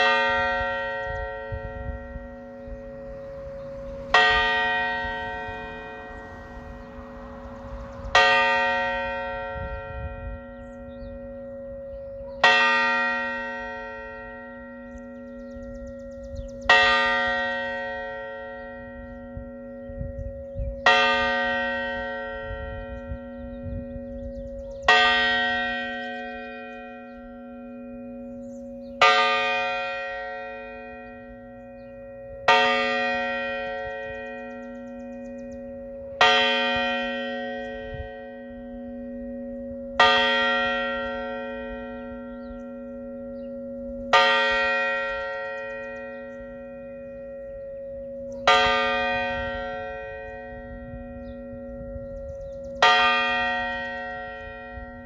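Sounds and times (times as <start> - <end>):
church bell tolling: 0.0 - 55.0.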